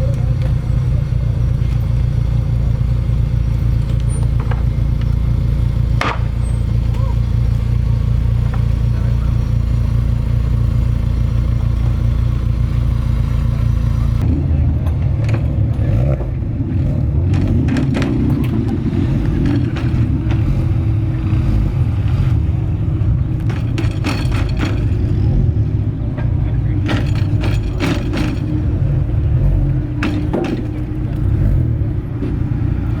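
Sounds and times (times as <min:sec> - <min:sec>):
car engine running steadily: 0:00.0 - 0:33.0
sharp clicks and knocks: 0:03.8 - 0:05.2, 0:05.9 - 0:07.0, 0:23.3 - 0:25.3, 0:26.1 - 0:31.4.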